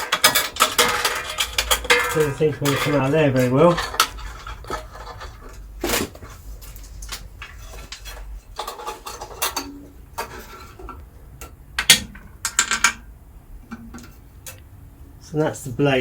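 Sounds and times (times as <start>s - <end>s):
metallic clinks and scrapes: 0.0s - 11.0s.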